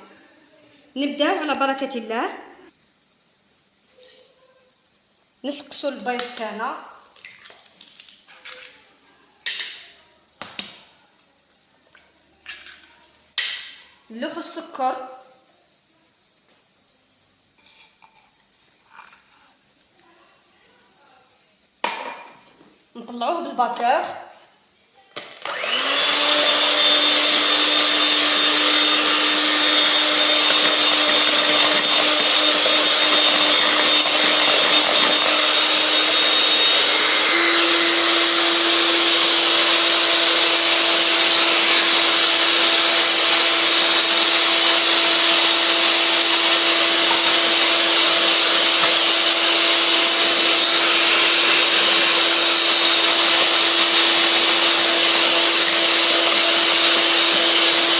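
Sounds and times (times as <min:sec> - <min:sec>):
electric hand mixer whine: 0:25.4 - 0:57.9.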